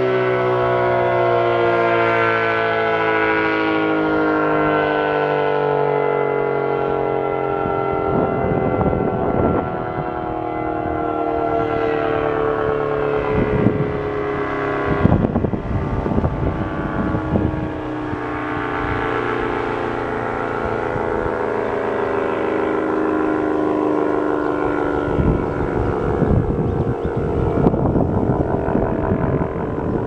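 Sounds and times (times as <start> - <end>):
warning siren wailing: 0.0 - 30.0
wind buffeting microphone: 7.4 - 30.0.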